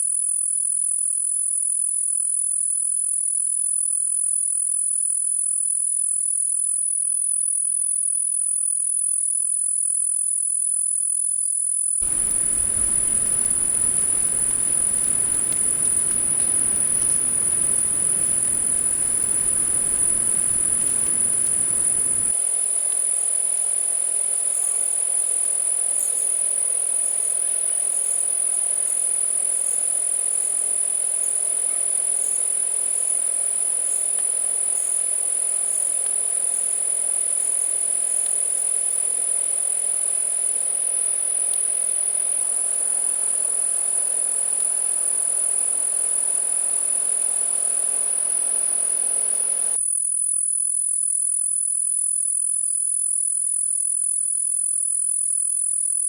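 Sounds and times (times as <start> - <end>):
low rushing noise: 12.0 - 22.4
insect chorus drone: 12.0 - 56.0.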